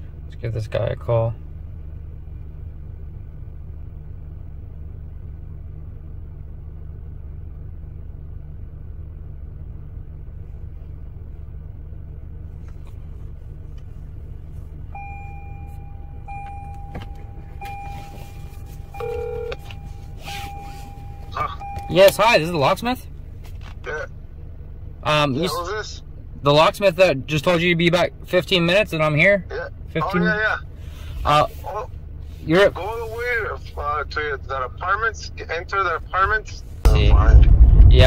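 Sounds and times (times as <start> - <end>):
vehicle engine and road noise: 0.0 - 38.0
phone call ringing tone: 18.9 - 20.0.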